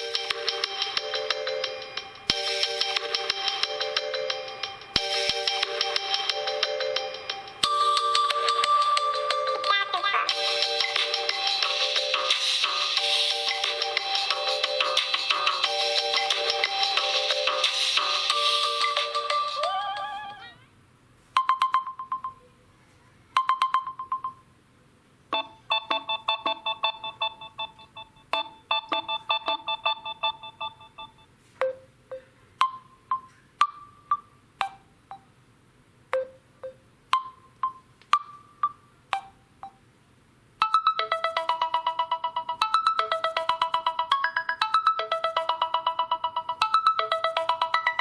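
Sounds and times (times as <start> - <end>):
phone ringtones: 21.4 - 22.4, 23.4 - 24.4, 25.4 - 34.8, 40.6 - 48.0.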